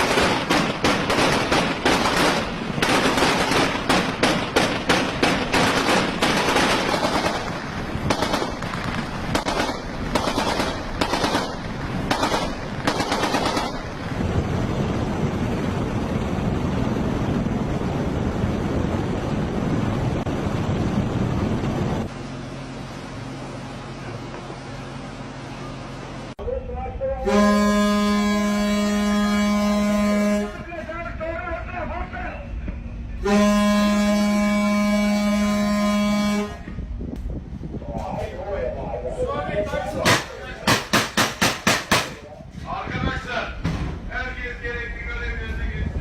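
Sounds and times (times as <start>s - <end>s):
automatic gunfire bursts: 0.0s - 7.5s, 8.1s - 8.7s, 9.3s - 13.8s
steady rumbling noise: 0.0s - 46.0s.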